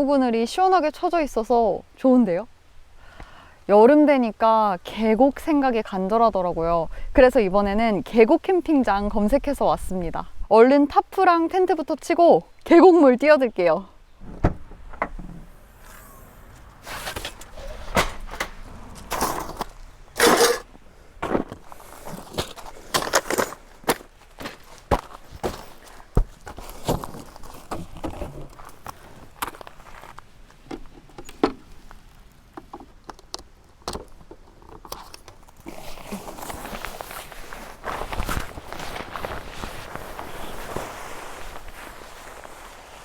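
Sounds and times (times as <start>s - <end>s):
camping gear rustling: 14.1s - 43.0s.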